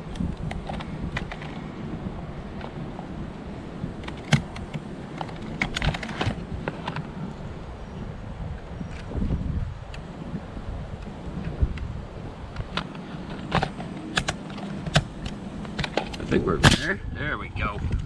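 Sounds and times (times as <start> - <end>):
wind rumble on microphone: 0.0 - 18.0
roofing nailer clicks and rattles: 0.1 - 1.7, 4.0 - 7.1, 12.6 - 17.0
sharp snap: 13.5 - 17.0.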